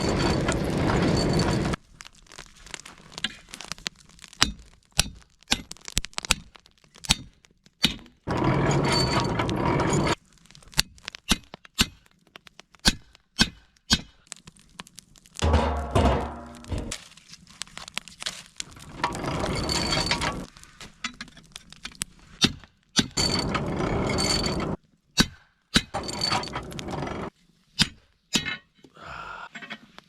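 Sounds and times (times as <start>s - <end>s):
sharp cracks and snaps: 1.8s - 8.3s, 10.2s - 15.4s, 16.5s - 19.2s, 20.3s - 23.2s.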